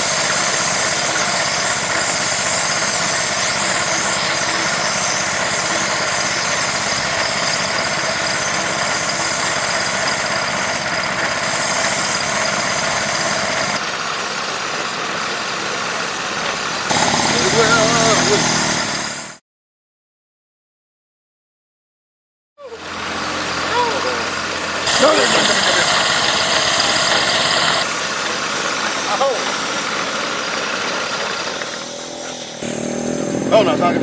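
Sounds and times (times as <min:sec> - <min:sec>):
engine running steadily: 0:00.0 - 0:19.4, 0:22.6 - 0:34.0.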